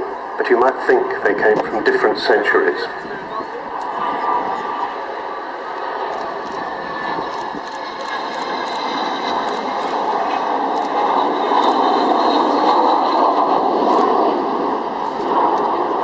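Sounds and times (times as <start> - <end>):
faint high jet whine: 0.0 - 16.0
jet aircraft passing overhead: 0.0 - 16.0.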